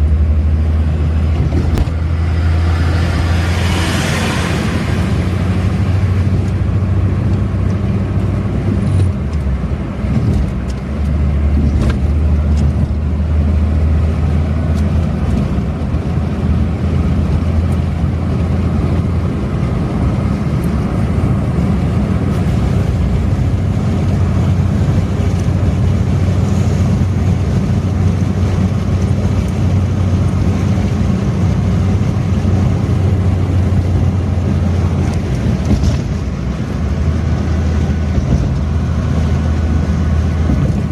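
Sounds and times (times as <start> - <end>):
car engine drone: 0.0 - 40.9
tyre and wind noise: 0.0 - 40.9.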